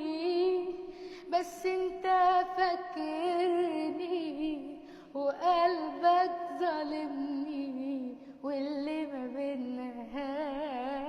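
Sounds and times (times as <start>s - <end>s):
woman singing a romantic ballad: 0.0s - 11.0s.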